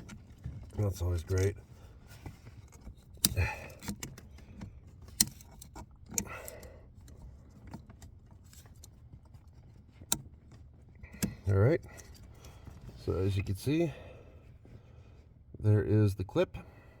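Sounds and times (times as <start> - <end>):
screwdriver clicking and scraping clip: 2.2 - 10.3, 11.1 - 12.5.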